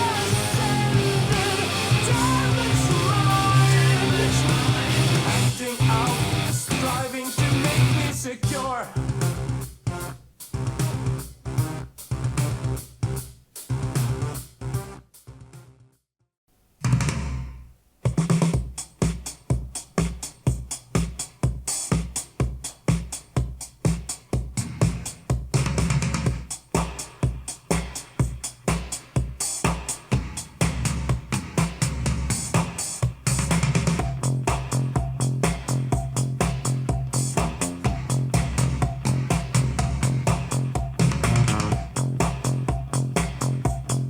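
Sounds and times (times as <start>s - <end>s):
rock song with electric guitar: 0.0s - 8.6s
person singing: 0.0s - 9.0s
electronic disco music: 0.0s - 15.0s, 18.8s - 44.0s.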